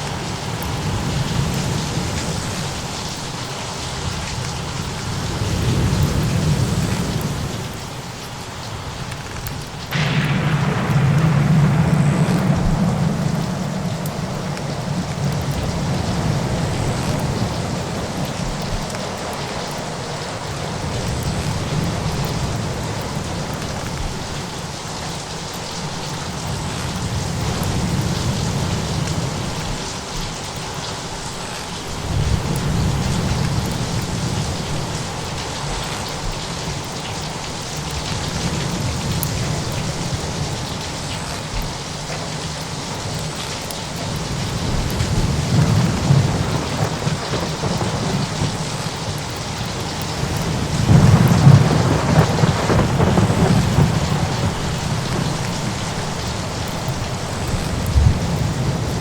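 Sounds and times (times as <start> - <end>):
steady rain: 0.0 - 59.0
thunder rumbling: 9.0 - 25.2, 44.0 - 59.0.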